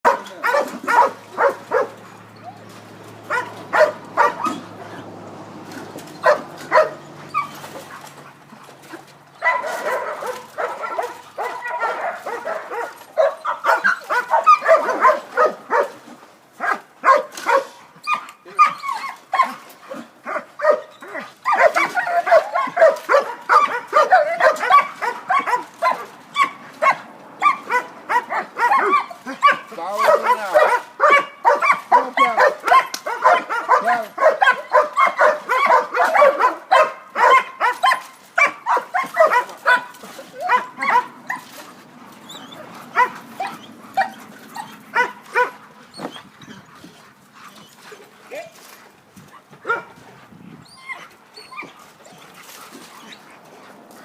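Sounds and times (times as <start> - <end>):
dogs barking and yapping: 0.0 - 54.0
dog barking sharply: 26.8 - 39.9.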